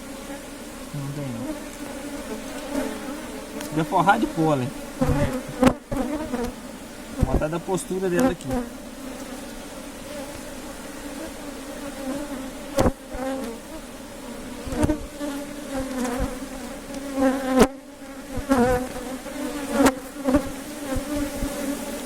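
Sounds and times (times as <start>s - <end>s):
bees buzzing: 0.0s - 22.0s
sharp knocks: 7.2s - 7.5s.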